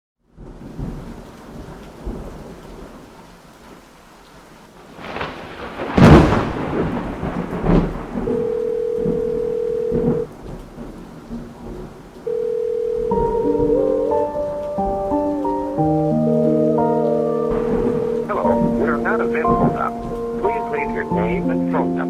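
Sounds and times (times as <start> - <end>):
rain: 0.2 - 22.0
rolling thunder: 4.8 - 12.1, 13.0 - 21.8
loud thunderclap: 4.9 - 11.9, 17.4 - 21.4
telephone ringing tone: 8.3 - 10.3, 12.3 - 14.2.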